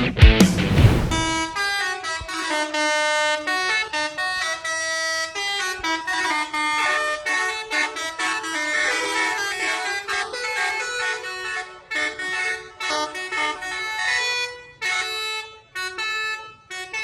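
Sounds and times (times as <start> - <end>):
loud rock music: 0.0 - 1.5
multi-tone air horn tune: 1.2 - 17.0.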